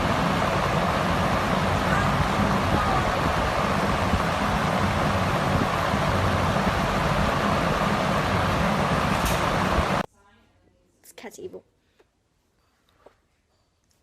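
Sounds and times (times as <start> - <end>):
deep rumble: 0.0 - 10.1
loud rushing noise: 0.0 - 10.1.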